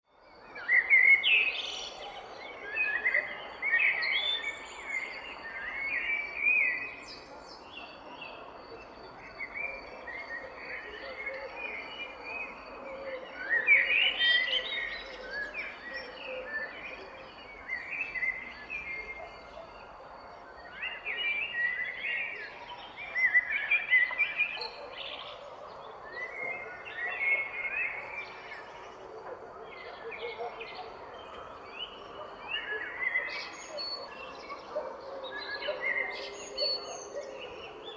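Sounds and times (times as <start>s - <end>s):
songbirds chirping and singing: 20.5s - 37.9s.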